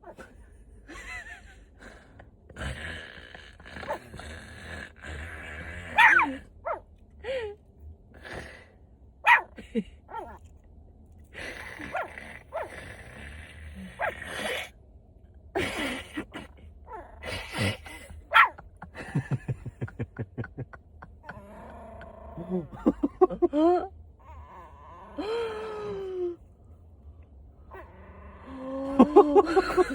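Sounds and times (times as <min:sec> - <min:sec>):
dog snoring: 0:01.8 - 0:06.1, 0:11.4 - 0:14.7.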